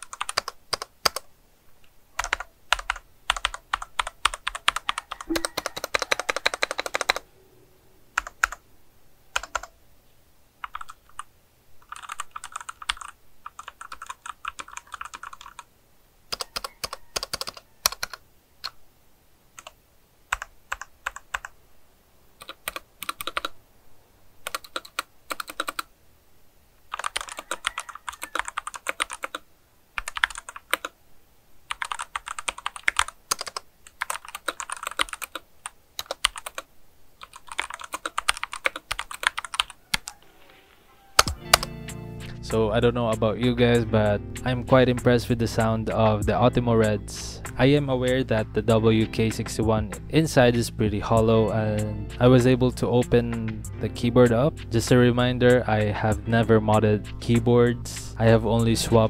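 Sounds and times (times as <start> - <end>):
rapid keyboard keystroke clicks: 0.0 - 1.3, 2.2 - 7.2, 8.2 - 8.6, 9.4 - 9.7, 10.6 - 15.6, 16.3 - 18.8, 19.6 - 21.6, 22.4 - 23.6, 24.4 - 25.9, 26.9 - 29.4, 30.0 - 31.0, 31.7 - 40.1, 41.2 - 41.7.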